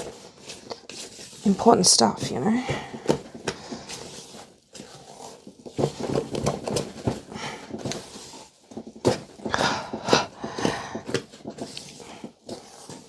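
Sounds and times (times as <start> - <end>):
spatula squelching and scraping bowl: 0.0 - 13.0.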